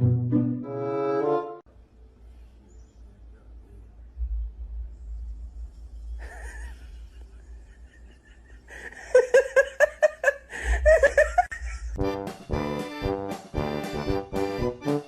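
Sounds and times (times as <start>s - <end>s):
person laughing: 6.2s - 12.1s.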